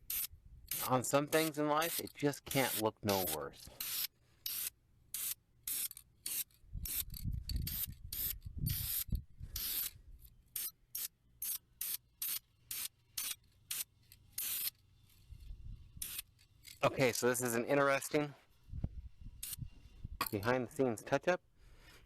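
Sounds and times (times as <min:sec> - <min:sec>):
spray paint can hissing: 0:00.0 - 0:10.0, 0:10.6 - 0:16.4, 0:19.3 - 0:19.7.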